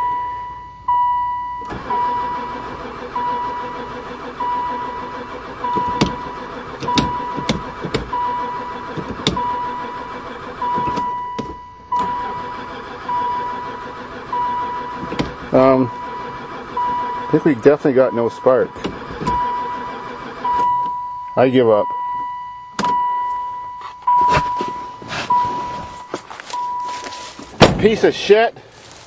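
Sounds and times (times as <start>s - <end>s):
electronic warning chime beeping: 0.0s - 2.4s, 18.1s - 27.3s
starter motor cranking engine: 1.6s - 21.2s.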